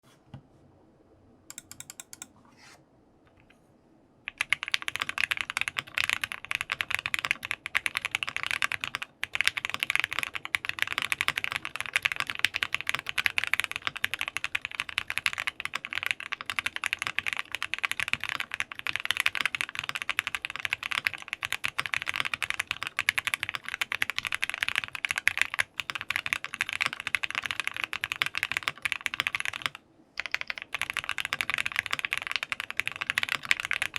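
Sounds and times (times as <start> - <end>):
fast typing on mechanical keyboard: 4.3 - 33.9.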